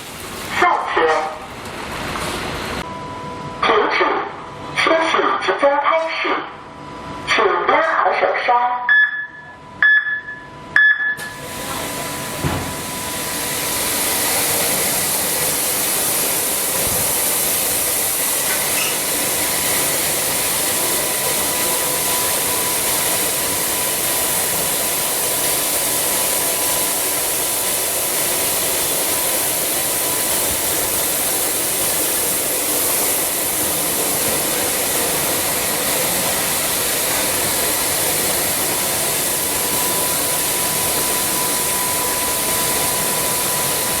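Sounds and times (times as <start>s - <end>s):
high-pressure water jets spraying: 11.2s - 44.0s.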